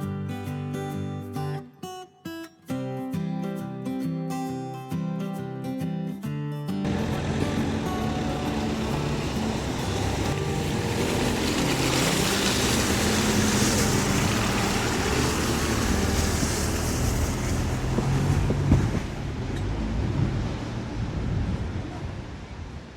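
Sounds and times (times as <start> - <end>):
vehicle engine running: 6.9 - 21.4
rushing wind-like noise: 6.9 - 22.9.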